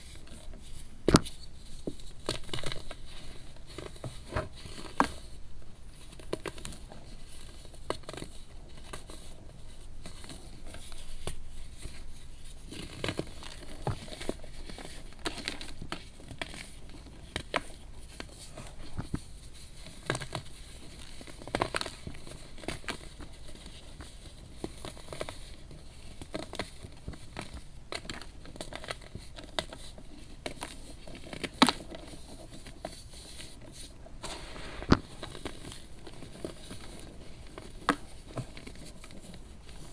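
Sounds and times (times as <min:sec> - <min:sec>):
baking soda crunching: 0:34.2 - 0:37.9.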